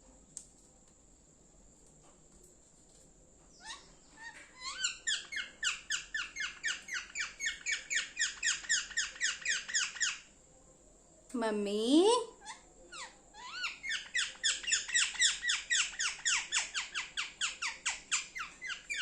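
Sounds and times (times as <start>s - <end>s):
parrot chirping: 3.5s - 10.4s, 12.4s - 19.0s.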